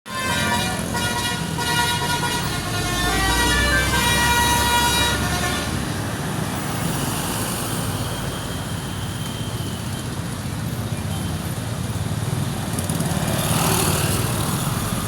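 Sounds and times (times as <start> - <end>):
road noise: 0.0 - 15.0
musical bus horn tune: 0.1 - 6.0
bus engine rumble: 0.1 - 13.4.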